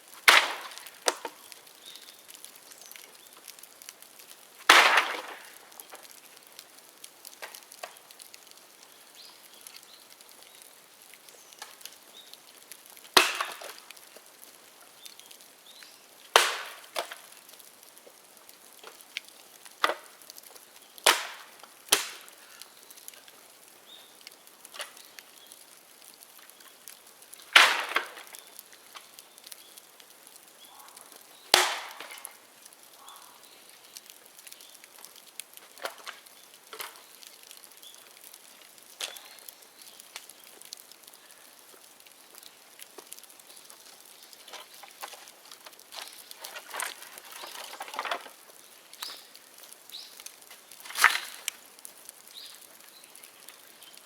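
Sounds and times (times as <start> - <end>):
bamboo cracking in fire: 0.0 - 54.0
low fire crackle: 0.0 - 54.0.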